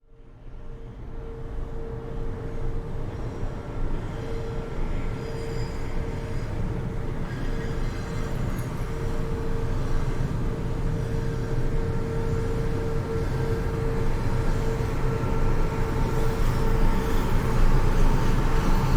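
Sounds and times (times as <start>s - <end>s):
train rumbling with whine: 5.2s - 18.9s.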